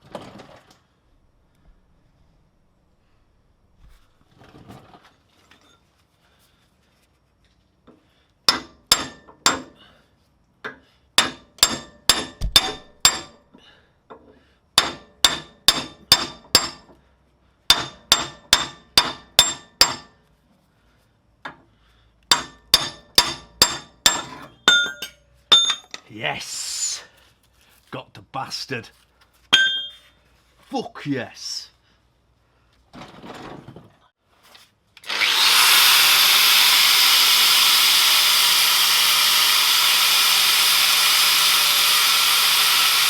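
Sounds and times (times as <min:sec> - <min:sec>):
hammer striking steel: 0:08.5 - 0:09.8, 0:11.2 - 0:13.4, 0:14.8 - 0:16.9, 0:17.7 - 0:20.2, 0:22.3 - 0:26.0, 0:29.5 - 0:30.1.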